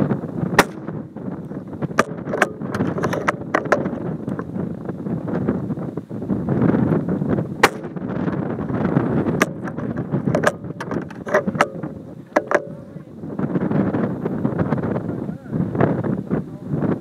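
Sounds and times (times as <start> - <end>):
wind buffeting microphone: 0.0 - 17.0
sharp crack: 0.4 - 4.5, 7.6 - 13.2.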